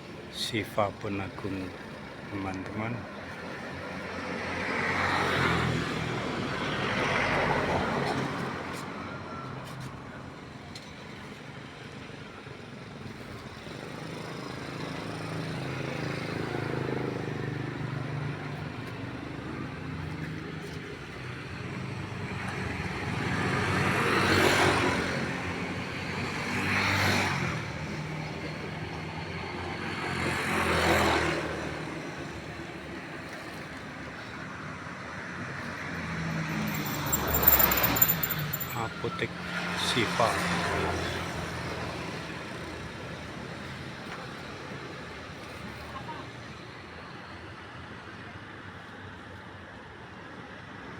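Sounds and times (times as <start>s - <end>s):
vehicles passing close by: 0.0s - 50.9s
low traffic hum: 9.9s - 50.0s.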